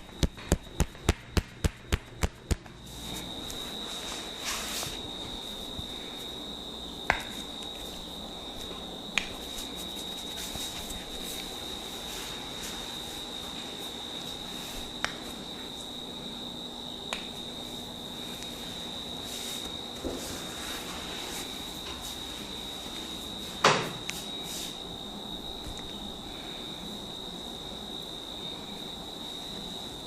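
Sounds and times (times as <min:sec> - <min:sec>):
hands rustling on skin and hair: 0:01.7 - 0:06.3, 0:07.2 - 0:15.4.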